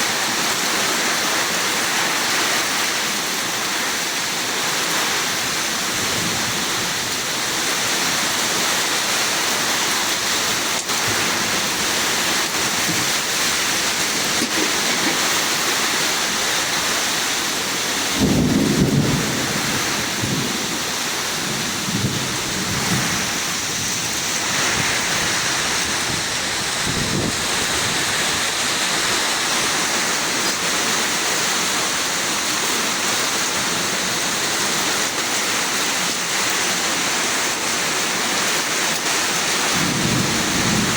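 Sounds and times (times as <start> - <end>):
heavy rain: 0.0 - 40.9
thunder rumbling: 18.0 - 28.7, 39.7 - 40.9.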